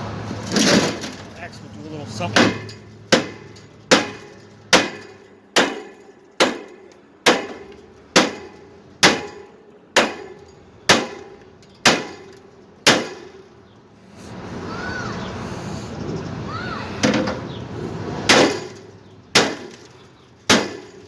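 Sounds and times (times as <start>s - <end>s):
axe clanging on metal: 2.2s - 13.6s, 18.3s - 21.0s.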